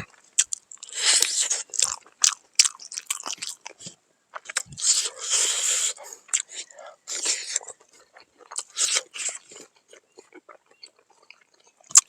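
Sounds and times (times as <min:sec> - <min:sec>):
person chewing and biting food: 0:00.0 - 0:12.0
wet mouth noises: 0:02.7 - 0:12.0.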